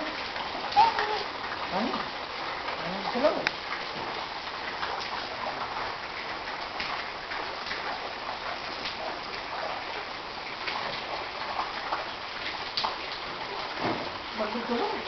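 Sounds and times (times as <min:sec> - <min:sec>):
faint water splashes: 0:00.0 - 0:15.0
water rushing: 0:00.0 - 0:15.0.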